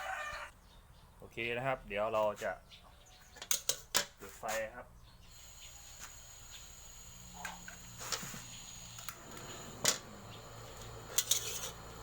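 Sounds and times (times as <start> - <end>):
clicks and knocks of fire lighting: 5.6 - 12.0.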